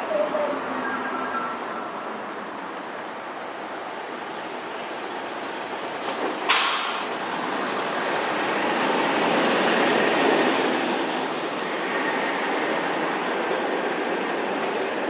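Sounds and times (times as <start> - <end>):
heavy vehicle rumble: 0.0 - 15.0
air brake hiss: 6.1 - 7.2.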